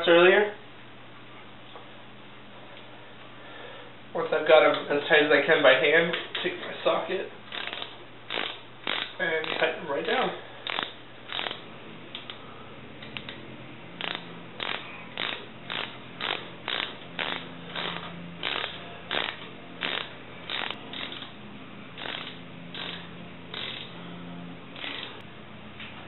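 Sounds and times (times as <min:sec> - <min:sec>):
socket ratchet rasping: 0:07.5 - 0:09.7, 0:10.6 - 0:11.6, 0:14.0 - 0:21.3, 0:22.0 - 0:24.0, 0:24.8 - 0:25.2.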